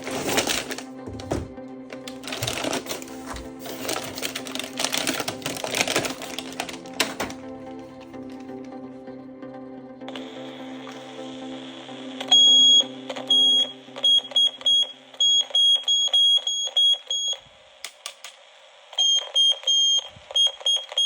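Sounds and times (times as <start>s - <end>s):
background music: 0.0s - 15.8s
electronic toy gun beeps: 12.3s - 17.4s, 19.0s - 21.0s.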